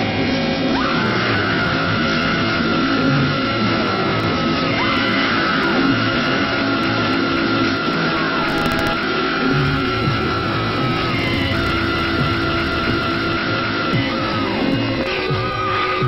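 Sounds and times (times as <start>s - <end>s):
low droning tones: 8.5s - 15.0s.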